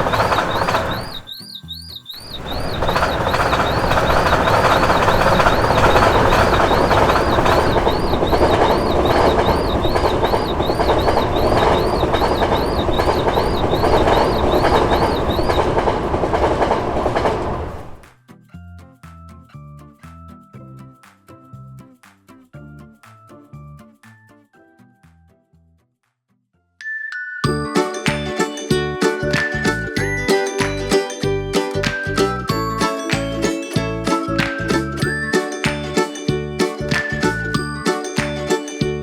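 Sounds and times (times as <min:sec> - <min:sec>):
train passing: 0:00.0 - 0:01.3, 0:02.2 - 0:18.0, 0:27.5 - 0:39.0
crossing signal warbling: 0:00.0 - 0:18.0, 0:27.4 - 0:39.0.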